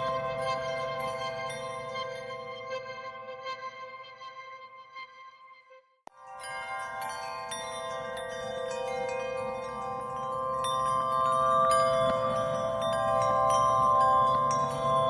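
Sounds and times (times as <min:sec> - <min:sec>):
bell-like chiming music: 0:00.0 - 0:03.0, 0:06.2 - 0:15.0.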